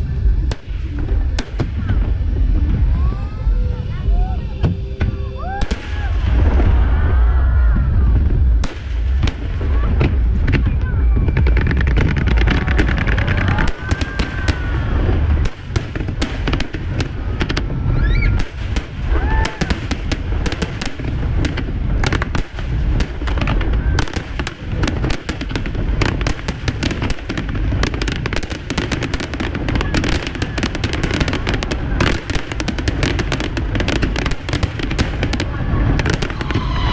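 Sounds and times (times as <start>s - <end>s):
deep rolling fireworks booms: 0.0s - 36.9s
fireworks crackling: 0.0s - 36.9s
whistling fireworks: 0.0s - 36.9s.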